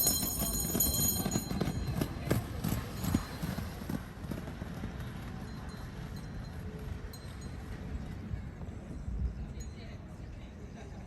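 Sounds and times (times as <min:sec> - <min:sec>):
skate wheels clattering on pavement: 0:00.0 - 0:06.5.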